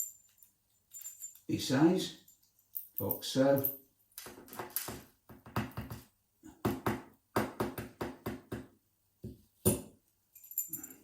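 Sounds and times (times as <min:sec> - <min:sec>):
small metal parts clattering: 0:00.0 - 0:01.5.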